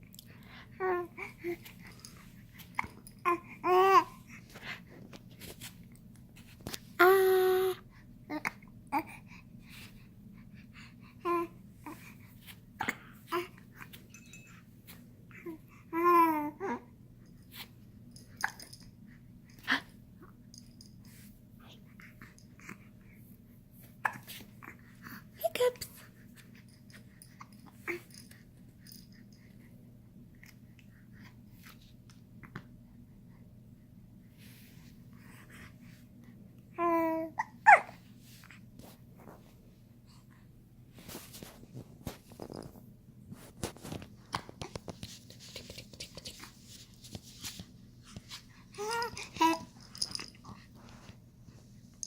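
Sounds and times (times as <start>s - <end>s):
low steady hum: 0.0s - 52.0s
baby cooing and squeaking: 2.8s - 4.2s, 36.8s - 38.0s, 48.8s - 49.7s
baby breathing and mouth sounds: 43.5s - 51.2s.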